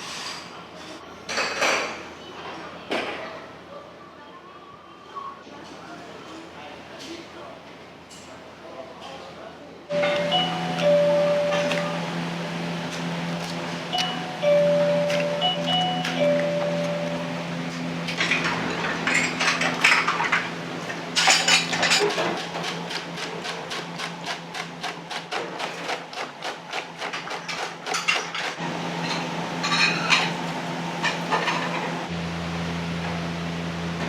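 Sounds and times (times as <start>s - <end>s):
metal cookware clattering: 18.1s - 22.4s, 28.0s - 30.4s.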